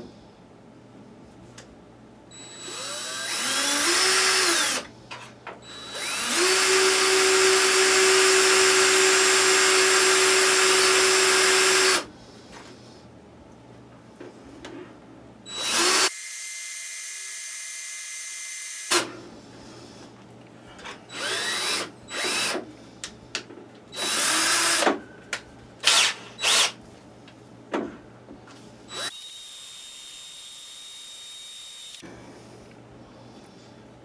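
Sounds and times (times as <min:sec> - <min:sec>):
power drill boring: 0:02.3 - 0:04.9, 0:05.6 - 0:12.1, 0:15.5 - 0:19.1, 0:21.1 - 0:22.6, 0:24.0 - 0:24.9, 0:25.8 - 0:26.8, 0:28.9 - 0:32.0.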